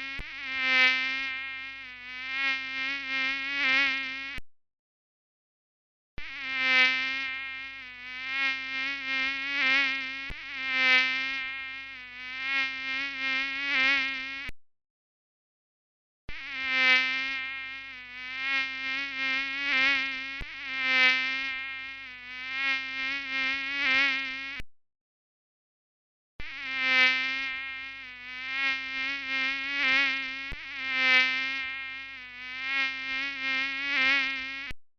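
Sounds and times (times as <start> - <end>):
mosquito whine: 0.0 - 4.4, 6.2 - 14.5, 16.3 - 24.6, 26.4 - 34.8.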